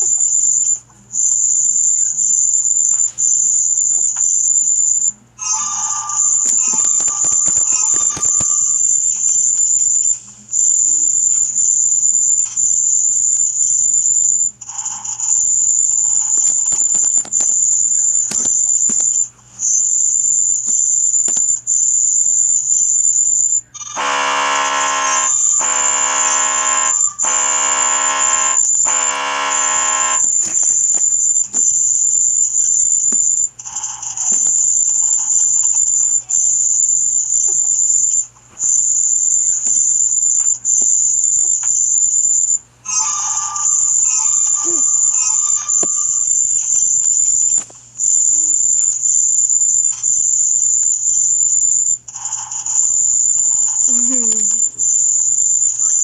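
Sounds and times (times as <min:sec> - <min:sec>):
loud low buzzer tones: 0:23.9 - 0:30.9
very high-pitched electronic tone: 0:23.9 - 0:33.4, 0:38.8 - 0:56.0.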